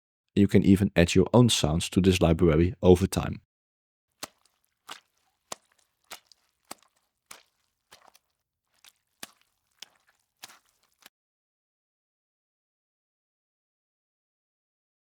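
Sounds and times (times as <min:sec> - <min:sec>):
faint footsteps: 0:04.2 - 0:11.1.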